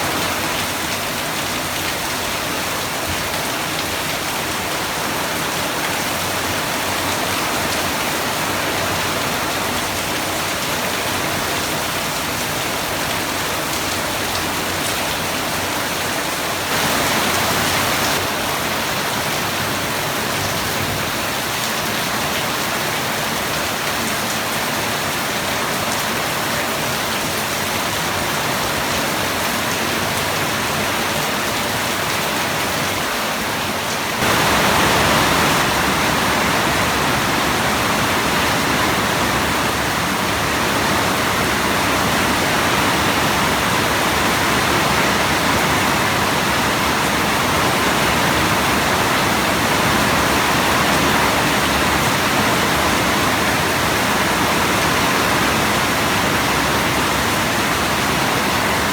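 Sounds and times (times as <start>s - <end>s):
heavy rain hissing: 16.6s - 19.1s, 34.2s - 58.9s.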